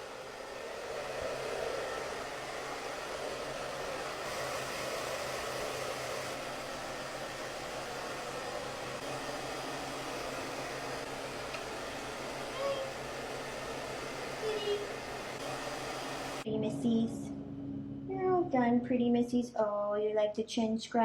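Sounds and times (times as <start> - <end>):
pet dryer blowing air: 0.0 - 16.5.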